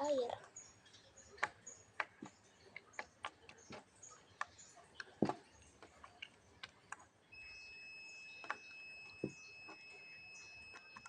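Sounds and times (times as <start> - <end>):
slime kneaded with sticky clicks: 1.4 - 7.1.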